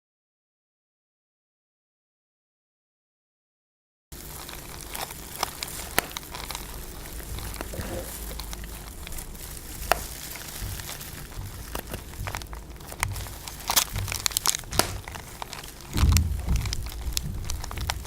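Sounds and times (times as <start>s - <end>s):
steady low hum: 4.1s - 18.0s
sharp crackling clicks: 4.2s - 18.0s.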